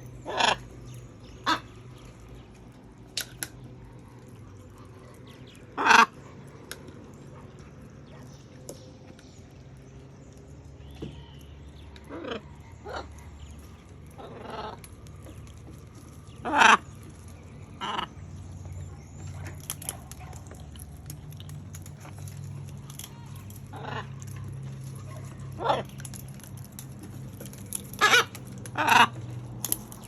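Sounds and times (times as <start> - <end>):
macaws squawking: 0.2 - 1.8, 5.7 - 6.3, 16.4 - 17.1, 27.7 - 29.3.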